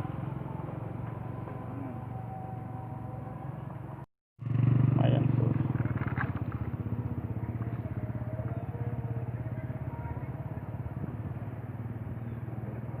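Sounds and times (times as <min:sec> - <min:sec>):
small engine running: 0:04.4 - 0:13.0.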